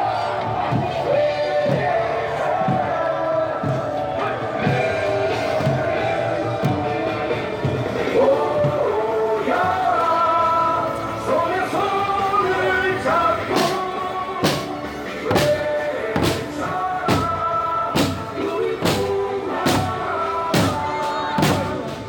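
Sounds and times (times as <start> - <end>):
big drum beating: 0.0 - 9.1, 13.6 - 22.0
march music: 0.0 - 22.0.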